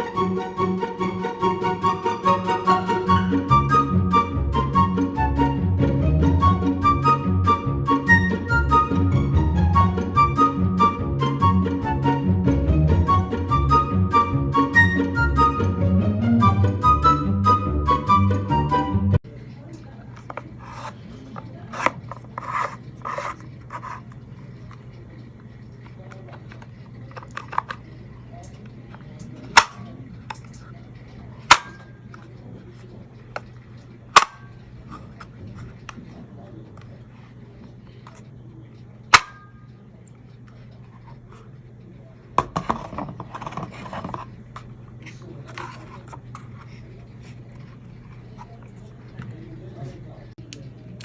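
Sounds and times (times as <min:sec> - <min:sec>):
steady low hum: 0:00.0 - 0:51.0
rubbing and scraping handling noise: 0:20.2 - 0:38.3, 0:42.4 - 0:49.4
clattering and rustling: 0:42.4 - 0:44.4.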